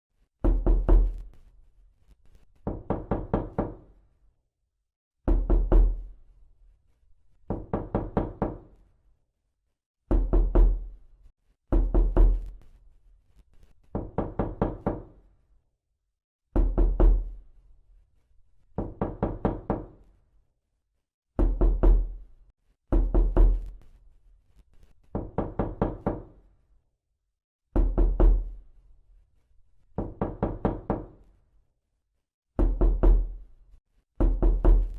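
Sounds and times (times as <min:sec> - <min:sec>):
knocking on a door: 0:00.4 - 0:01.2, 0:02.6 - 0:03.9, 0:05.2 - 0:06.1, 0:07.5 - 0:08.7, 0:10.1 - 0:10.9, 0:11.7 - 0:12.5, 0:13.9 - 0:15.2, 0:16.5 - 0:17.4, 0:18.8 - 0:20.0, 0:21.4 - 0:22.2, 0:22.9 - 0:23.7, 0:25.1 - 0:26.4, 0:27.7 - 0:28.6, 0:30.0 - 0:31.2, 0:32.6 - 0:33.4, 0:34.2 - 0:34.9.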